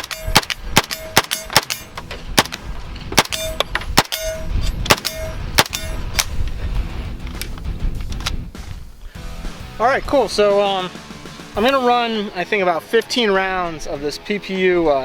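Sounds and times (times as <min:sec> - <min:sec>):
steel target ping: 0:00.0 - 0:02.0, 0:03.2 - 0:06.1
gunshots: 0:00.0 - 0:02.6, 0:03.2 - 0:06.3.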